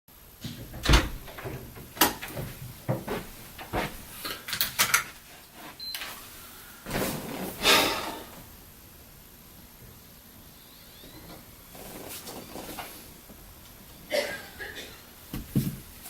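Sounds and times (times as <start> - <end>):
rustling scrapes: 5.1 - 8.4, 11.7 - 13.1.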